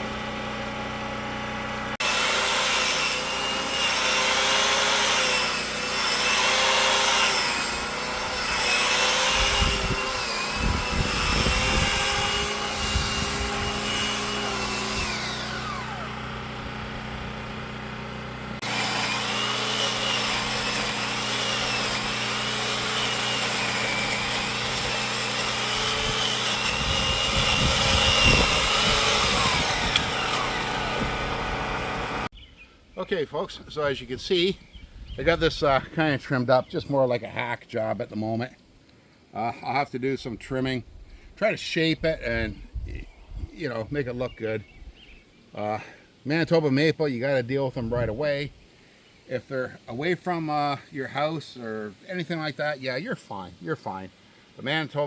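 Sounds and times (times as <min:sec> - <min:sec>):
pole saw cutting branches: 0:00.0 - 0:32.3.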